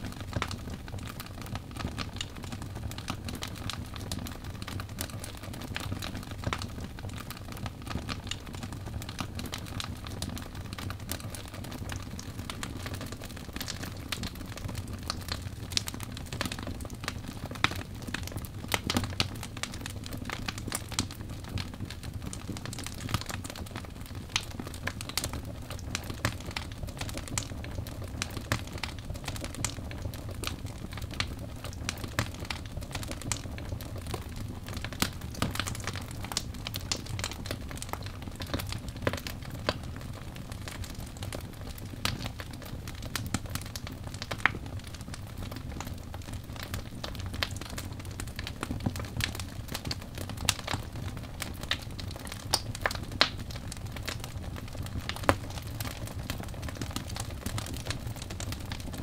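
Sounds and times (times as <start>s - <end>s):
wood fire crackling: 0.0s - 59.0s.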